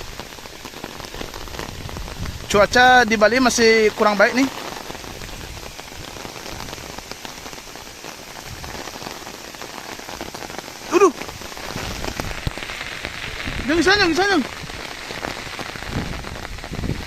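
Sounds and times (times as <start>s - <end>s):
rain pattering: 0.0s - 17.0s
short voice sound: 10.9s - 11.2s.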